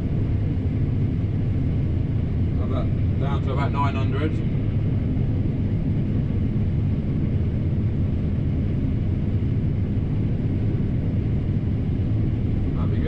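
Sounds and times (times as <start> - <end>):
combine harvester rumbling: 0.0 - 13.0.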